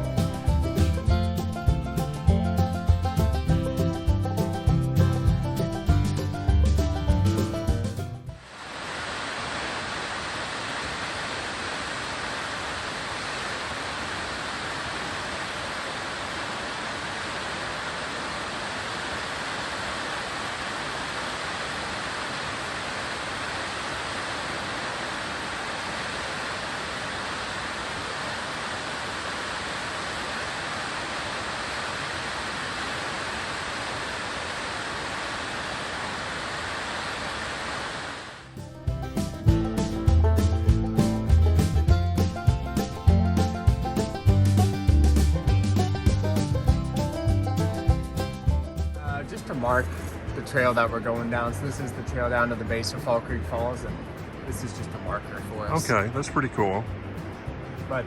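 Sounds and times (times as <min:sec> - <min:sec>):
waterfall rushing: 0:08.4 - 0:38.4.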